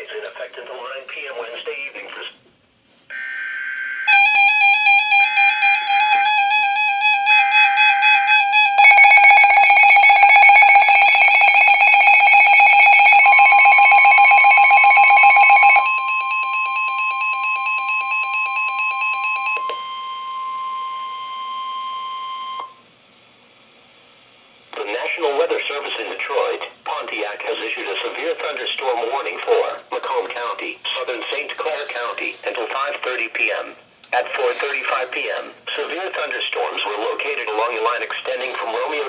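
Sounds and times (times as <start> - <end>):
pulsing electronic alarm tone: 3.1 - 22.8.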